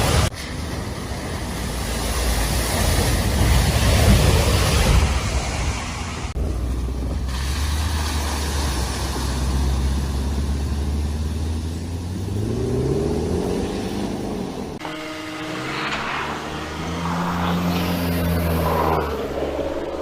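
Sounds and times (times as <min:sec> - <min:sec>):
car engine running and revving: 0:06.4 - 0:20.0.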